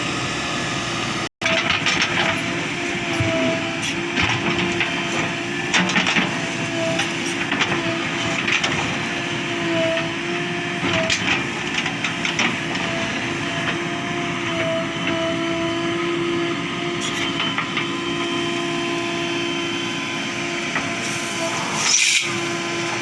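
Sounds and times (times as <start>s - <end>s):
diesel engine under load: 0.0s - 23.0s
wavering hydraulic whine: 12.8s - 23.0s.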